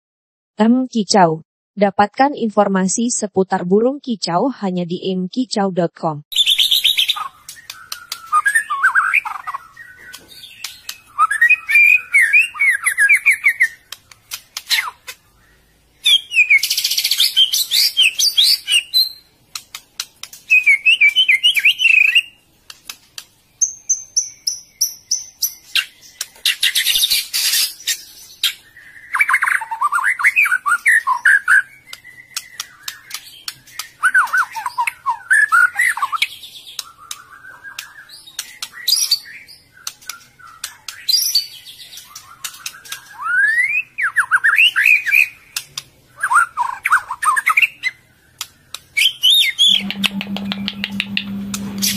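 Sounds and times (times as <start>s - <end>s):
bird singing whistled phrases: 6.3s - 13.8s, 16.0s - 19.3s, 20.5s - 22.4s, 28.6s - 39.4s, 49.0s - 51.9s
sharp bird clicks: 6.4s - 12.0s, 13.0s - 15.2s, 19.5s - 28.6s, 31.8s - 35.0s, 36.2s - 39.1s, 39.8s - 43.2s, 48.3s - 51.3s.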